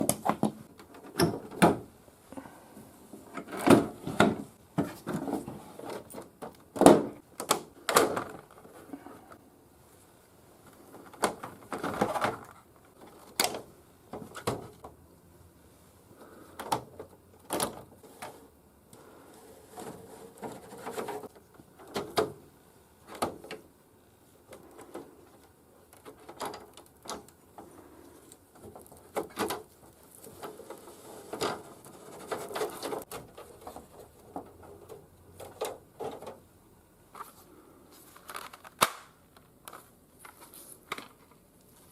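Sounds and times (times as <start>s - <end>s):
sharp plastic snaps: 38.3s - 39.8s.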